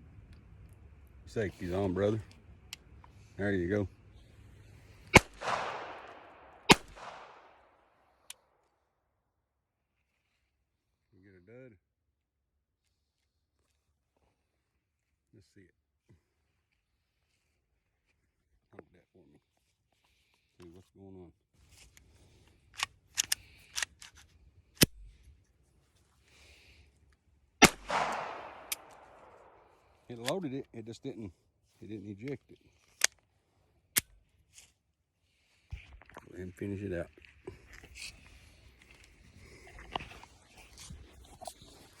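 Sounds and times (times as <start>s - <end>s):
pistol shots with echo: 5.1s - 7.6s, 27.6s - 29.6s
pistol light click: 5.2s - 7.4s, 27.6s - 29.2s
gunshot with ringing tail: 5.2s - 7.5s, 27.6s - 29.6s.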